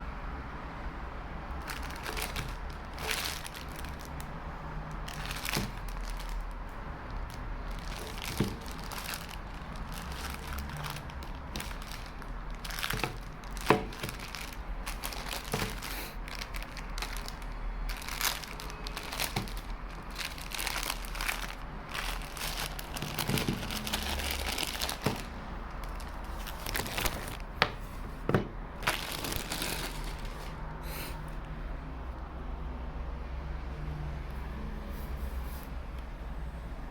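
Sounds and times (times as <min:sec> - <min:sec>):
paper and cardboard rustling: 0:01.6 - 0:04.3, 0:05.0 - 0:06.5, 0:07.2 - 0:31.2.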